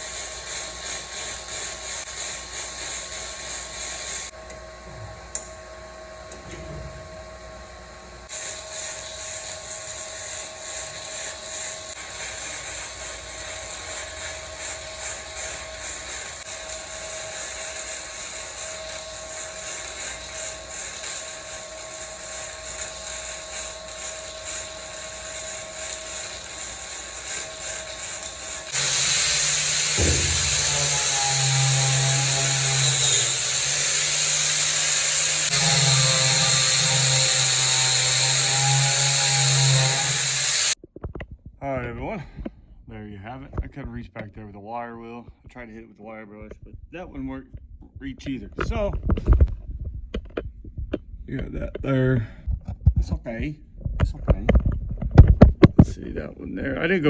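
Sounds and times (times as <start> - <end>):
arc welding crackling: 0.0 - 4.4, 8.2 - 40.8
power tool running: 0.0 - 40.8.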